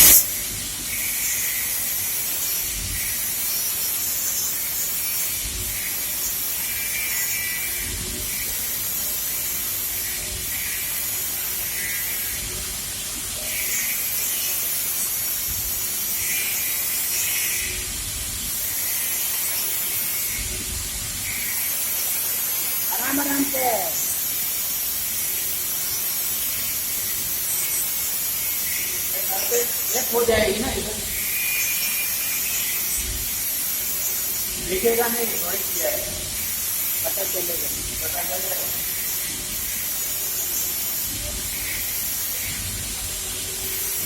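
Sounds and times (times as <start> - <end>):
welding hissing and crackling: 0.0 - 44.0.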